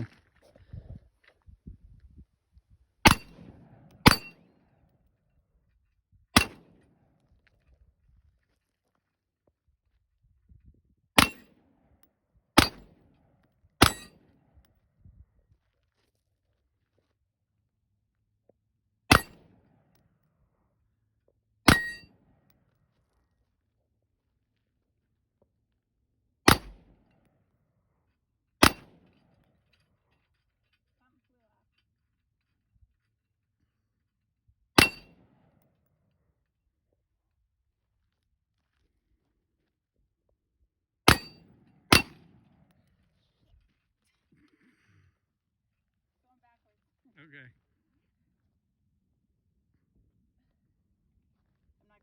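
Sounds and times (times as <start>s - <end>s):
rifle gunshots: 3.1s - 4.5s, 6.4s - 6.8s, 12.6s - 12.9s, 26.5s - 26.9s, 28.6s - 29.0s, 41.1s - 42.5s.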